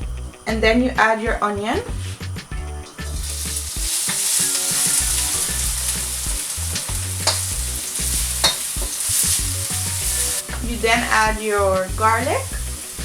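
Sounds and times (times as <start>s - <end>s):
onion sizzling in hot oil: 1.8s - 13.0s
utensil clacking on wok: 3.2s - 13.0s.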